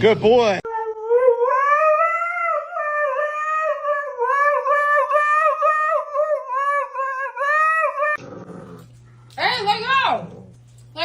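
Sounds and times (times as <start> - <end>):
dog howling: 0.6 - 8.5.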